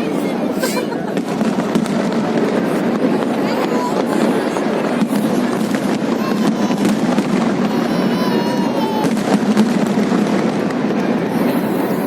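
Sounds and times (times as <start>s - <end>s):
fireworks crackling and popping: 0.0s - 12.0s
fireworks whistling: 0.0s - 12.0s.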